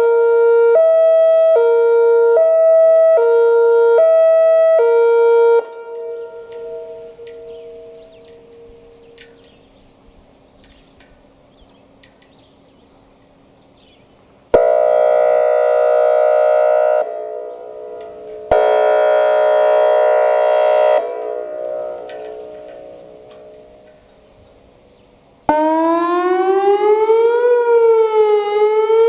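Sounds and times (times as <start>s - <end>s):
warning siren horn-like blasts: 0.0s - 10.4s, 14.5s - 29.0s.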